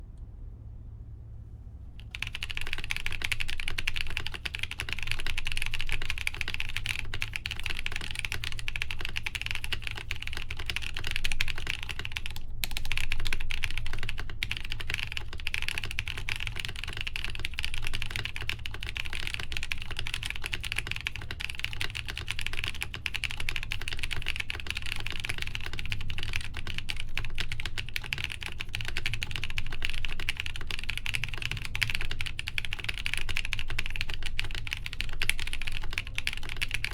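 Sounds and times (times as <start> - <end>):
fast typing on mechanical keyboard: 2.0 - 36.9.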